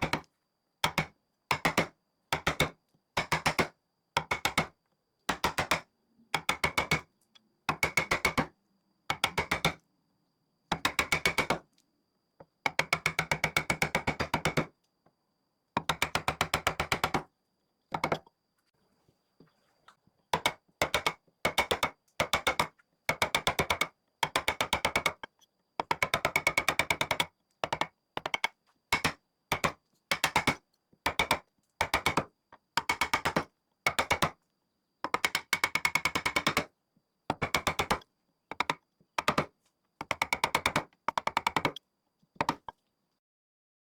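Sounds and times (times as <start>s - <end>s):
rapid tapping on wood: 35.1s - 36.7s, 37.3s - 41.8s, 42.4s - 42.7s.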